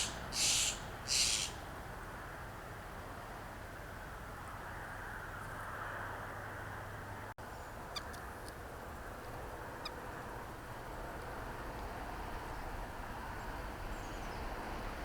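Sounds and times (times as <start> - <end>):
short bird calls: 0.0 - 1.6.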